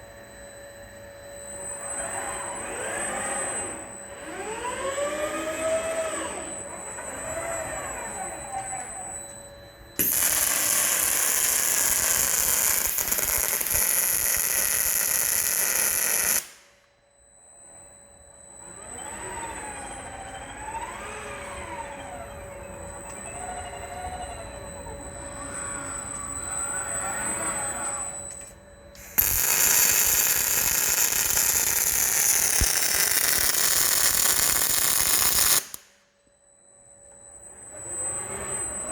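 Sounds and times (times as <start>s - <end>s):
robot servo motors whining: 10.0s - 14.9s, 29.0s - 35.8s
welding arc hissing: 10.0s - 16.7s, 29.0s - 35.9s.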